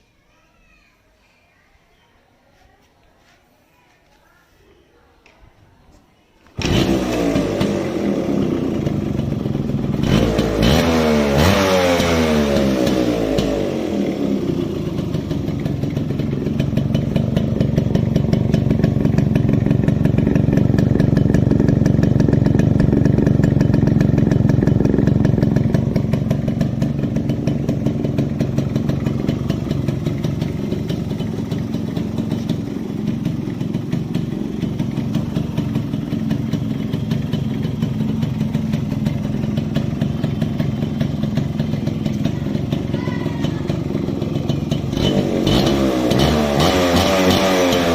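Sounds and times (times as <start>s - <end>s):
two-stroke engine idling: 6.6s - 47.9s.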